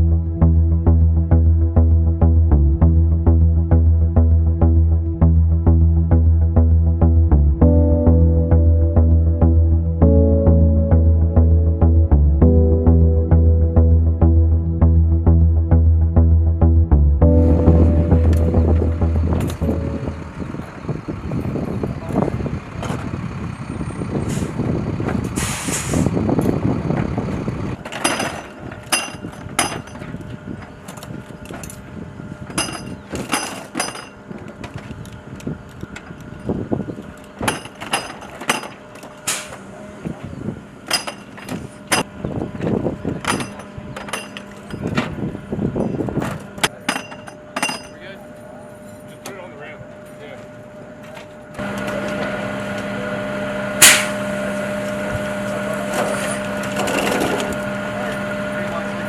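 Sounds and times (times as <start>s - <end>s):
heavy vehicle engine running: 0.0s - 47.6s, 48.2s - 59.0s
hiss of air: 25.4s - 26.1s
metallic clinks and clanks: 27.9s - 30.1s, 32.6s - 34.2s, 43.2s - 45.0s, 46.8s - 48.0s.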